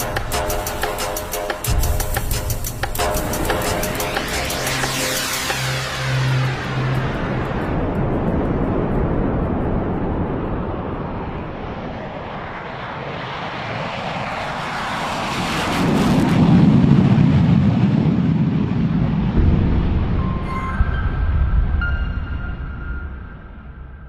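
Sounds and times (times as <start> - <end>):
fighter jet flying past: 3.0 - 23.5.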